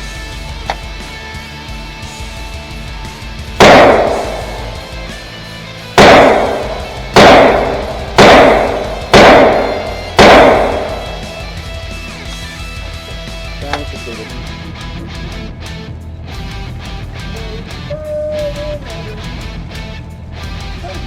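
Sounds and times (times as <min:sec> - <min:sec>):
echoing gunshots: 0:03.6 - 0:12.0.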